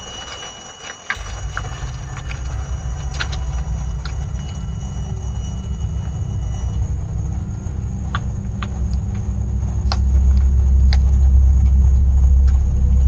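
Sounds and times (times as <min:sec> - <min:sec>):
vehicle rumble: 0:01.1 - 0:13.0.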